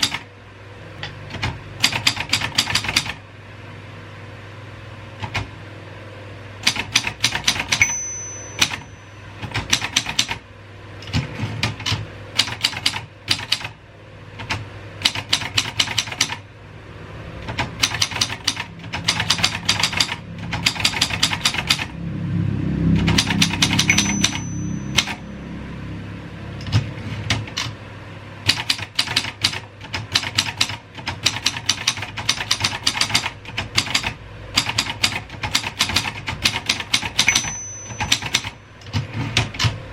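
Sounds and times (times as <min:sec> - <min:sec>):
typewriter key strikes: 0:00.0 - 0:00.2, 0:01.3 - 0:03.2, 0:06.6 - 0:08.8, 0:09.4 - 0:10.4, 0:11.0 - 0:13.7, 0:14.4 - 0:16.4, 0:17.5 - 0:21.9, 0:28.5 - 0:39.8
typewriter margin bell ring: 0:07.5 - 0:10.0, 0:23.4 - 0:25.3, 0:37.0 - 0:38.6.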